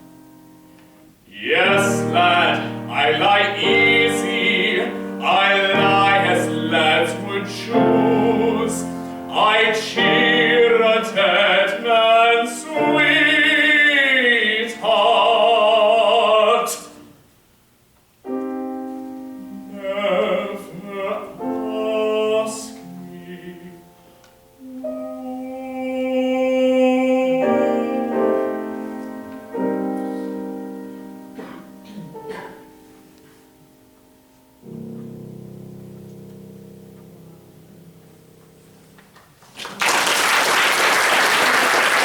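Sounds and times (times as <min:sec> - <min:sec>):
piano accompaniment: 0:00.0 - 0:17.1, 0:18.2 - 0:42.0
classical singer with vibrato: 0:01.2 - 0:17.2, 0:19.3 - 0:30.0.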